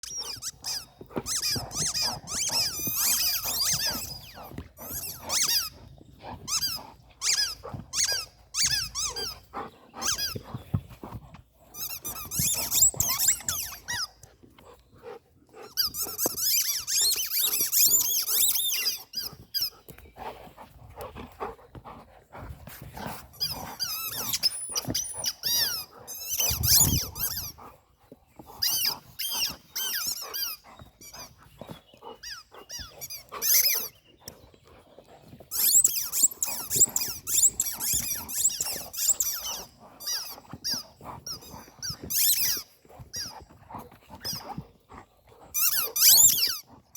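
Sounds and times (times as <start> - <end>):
squeaky toys squeaking: 0.0 - 5.7, 6.5 - 9.4, 11.8 - 14.2, 15.7 - 19.7, 23.4 - 27.5, 28.6 - 31.3, 32.2 - 33.9, 35.5 - 43.3, 45.6 - 46.6.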